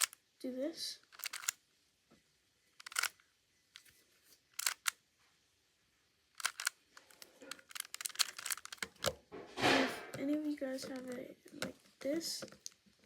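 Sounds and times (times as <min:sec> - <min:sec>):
puzzle cube layers clacking: 0:01.0 - 0:01.6, 0:02.8 - 0:03.2, 0:04.5 - 0:05.0, 0:06.4 - 0:12.8.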